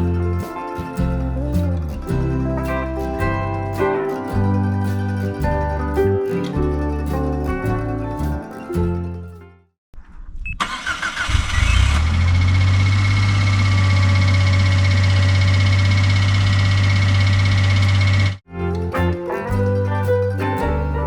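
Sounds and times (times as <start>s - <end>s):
car engine starting and idling: 10.6s - 18.4s.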